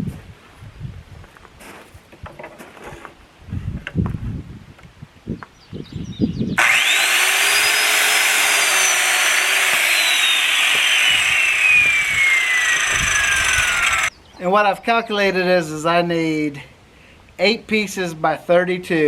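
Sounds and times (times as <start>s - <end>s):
power saw cutting wood: 6.6s - 14.1s.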